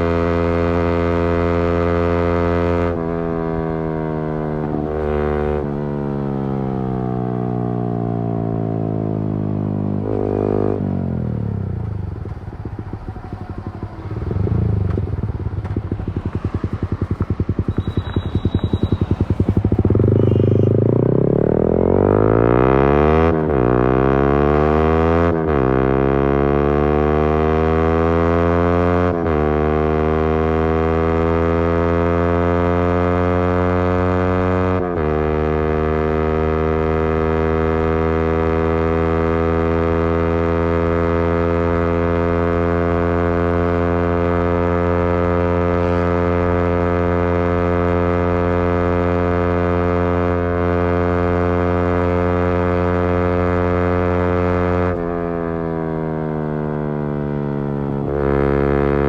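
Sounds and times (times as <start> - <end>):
motorcycle engine accelerating: 0.0 - 59.0.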